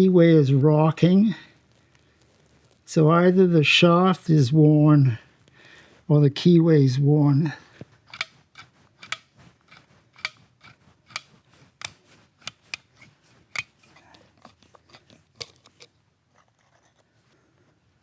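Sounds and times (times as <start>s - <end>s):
tools and metal parts clinking: 8.1s - 16.5s.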